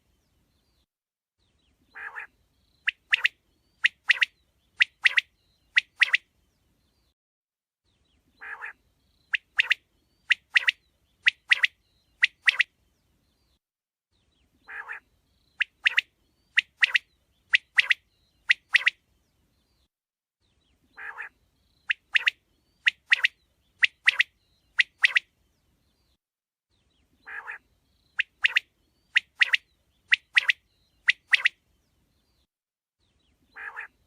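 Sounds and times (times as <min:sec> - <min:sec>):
quail calling: 0:01.9 - 0:02.3, 0:08.4 - 0:08.8, 0:14.7 - 0:15.0, 0:21.0 - 0:21.3, 0:27.2 - 0:27.6, 0:33.5 - 0:34.0.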